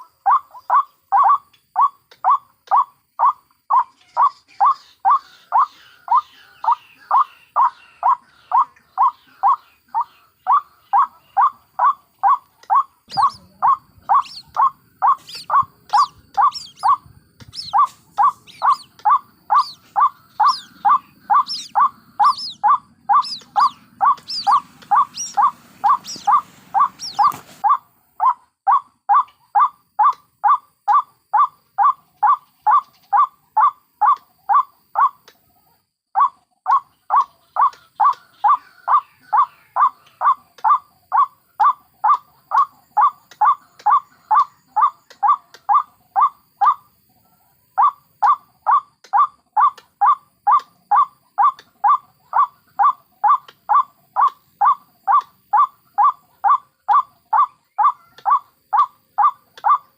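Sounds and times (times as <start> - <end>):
waterhen harsh call: 11.8 - 27.8.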